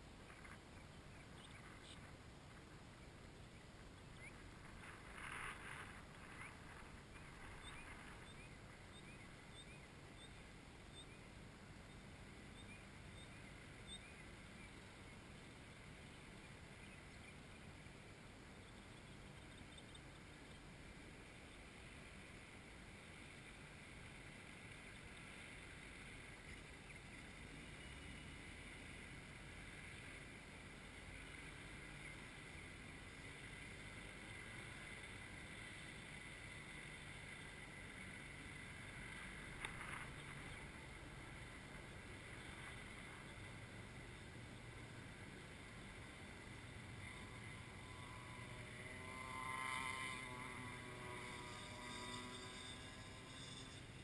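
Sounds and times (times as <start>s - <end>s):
faint wind: 0.0s - 54.0s
two-stroke kart engine passing: 20.7s - 54.0s.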